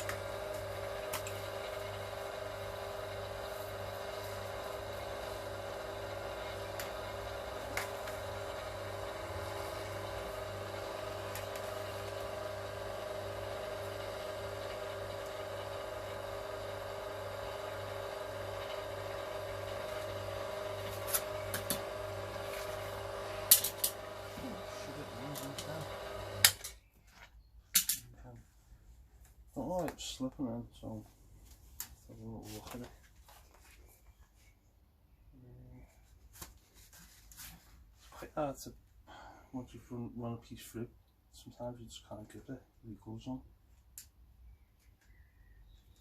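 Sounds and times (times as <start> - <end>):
machine motor humming: 0.0 - 26.7.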